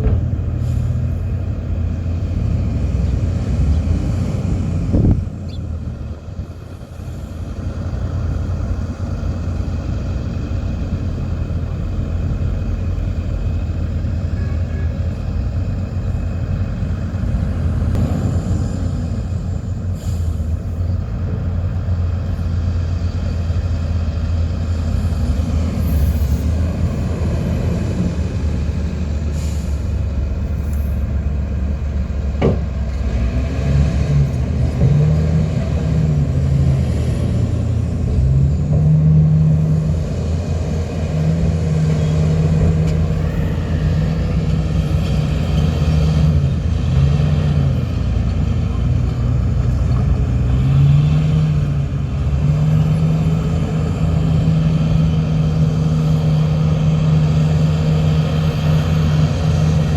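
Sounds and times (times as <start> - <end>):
heavy diesel engines droning: 0.0 - 59.9.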